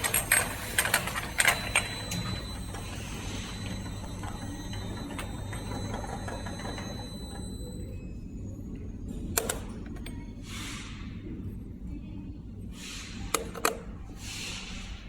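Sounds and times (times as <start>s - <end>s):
labeling machine clicks and clatter: 0.0s - 7.5s
steady motor hum: 0.0s - 15.0s.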